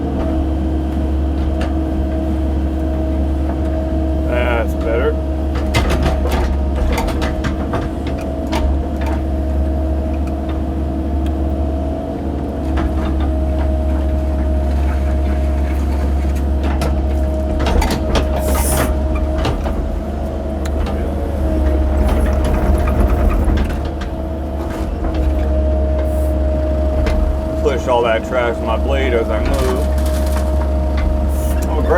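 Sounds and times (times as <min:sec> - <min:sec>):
diesel engine running: 0:00.0 - 0:31.9
hydraulic whine: 0:12.8 - 0:31.9
bucket scraping through dirt: 0:28.6 - 0:31.9.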